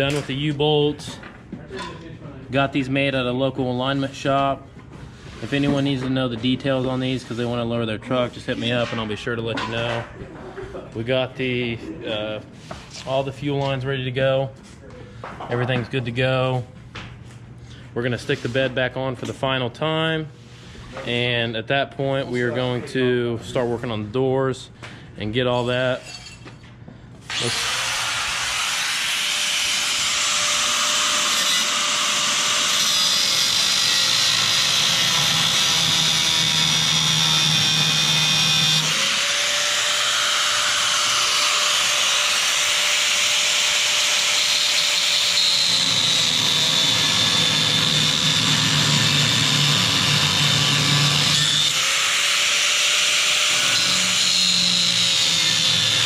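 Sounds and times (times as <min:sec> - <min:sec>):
power tool running: 0:27.3 - 0:56.0.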